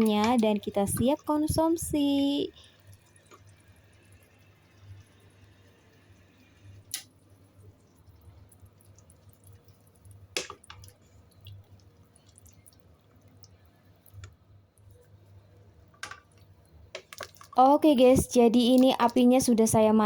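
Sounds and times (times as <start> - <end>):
low steady hum: 0.0 - 20.0
faint clicks and knocks: 2.9 - 3.6, 9.0 - 19.8.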